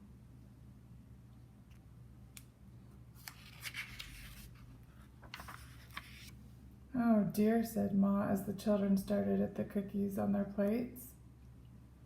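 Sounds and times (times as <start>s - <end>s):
book pages rustling: 3.1s - 6.4s.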